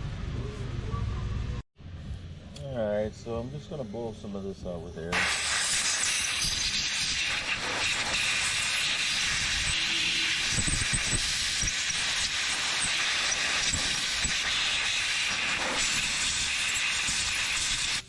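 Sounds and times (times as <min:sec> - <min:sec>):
compressed air hissing: 0:05.0 - 0:18.0.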